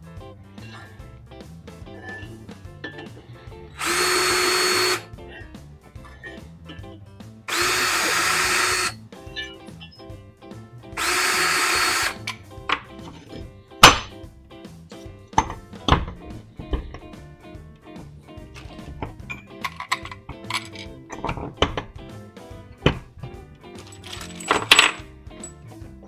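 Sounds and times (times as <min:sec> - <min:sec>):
background music: 0:00.0 - 0:26.0
power drill whining: 0:03.7 - 0:05.1, 0:07.5 - 0:09.0, 0:11.0 - 0:12.3.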